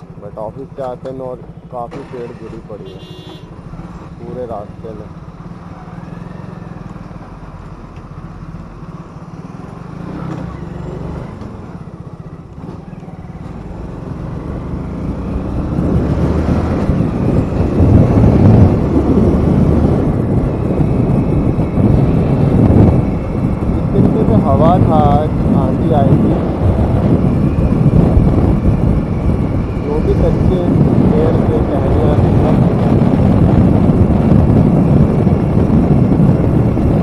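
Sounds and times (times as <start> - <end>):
wind buffeting microphone: 11.4 - 37.0.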